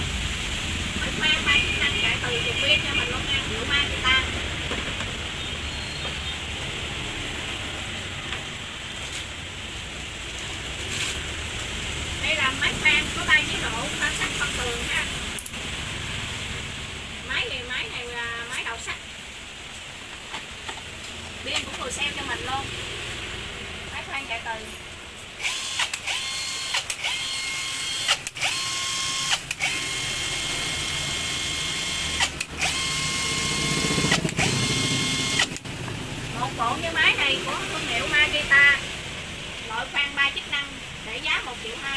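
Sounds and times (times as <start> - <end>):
cordless drill motor whining: 25.4 - 35.7.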